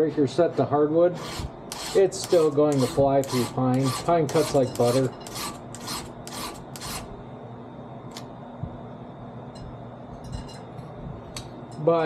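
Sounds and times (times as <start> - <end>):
steady low hum: 0.0 - 12.0
file rasping on chain: 1.2 - 7.1.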